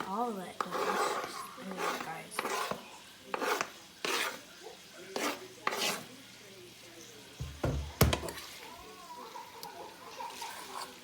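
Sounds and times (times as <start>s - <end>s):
utensil scraping a pot: 0.0s - 4.5s, 5.1s - 6.1s, 10.2s - 11.0s
utensil knocking against a pot: 7.4s - 8.4s.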